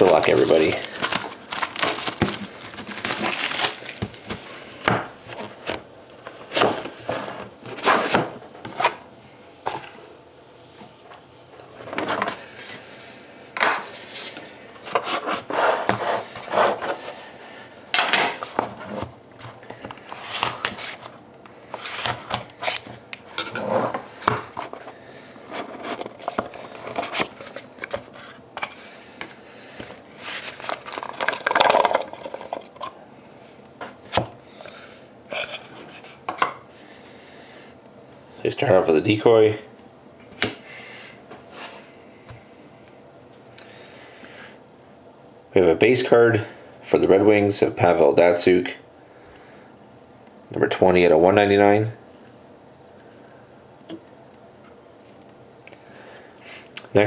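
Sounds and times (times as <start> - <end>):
cardboard and cards rustling: 0.0 - 9.0, 18.3 - 33.0.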